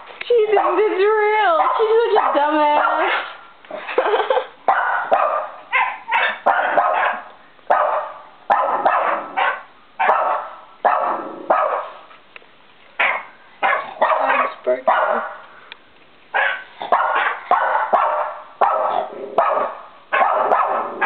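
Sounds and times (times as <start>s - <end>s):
dog barking: 0.5s - 3.4s, 4.7s - 12.1s, 13.0s - 15.4s, 16.3s - 21.0s.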